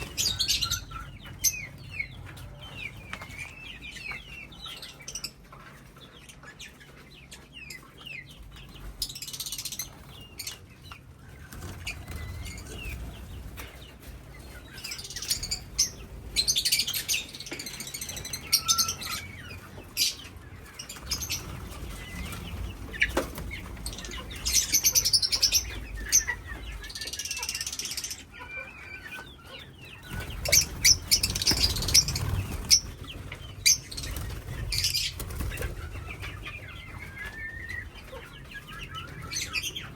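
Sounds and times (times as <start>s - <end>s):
parrots chirping: 0.0s - 2.2s, 14.4s - 39.9s
chickens clucking: 0.0s - 39.9s
birds flapping wings: 30.1s - 36.0s.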